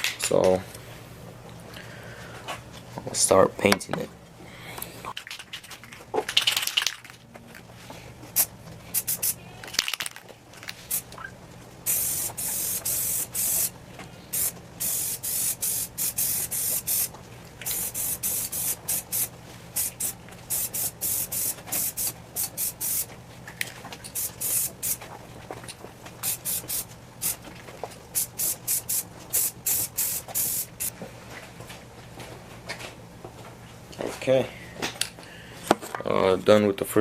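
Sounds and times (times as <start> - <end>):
spray paint can hissing: 8.4 - 9.4, 11.8 - 13.7, 14.3 - 23.1, 24.1 - 25.0, 26.2 - 27.4, 28.1 - 30.9.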